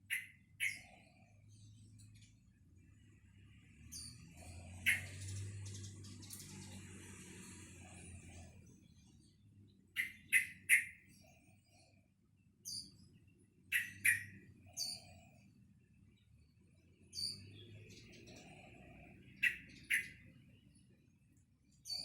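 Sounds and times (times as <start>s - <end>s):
bird chirping: 0.0s - 2.5s, 3.8s - 11.8s, 12.6s - 15.4s, 17.0s - 20.8s, 21.7s - 22.0s.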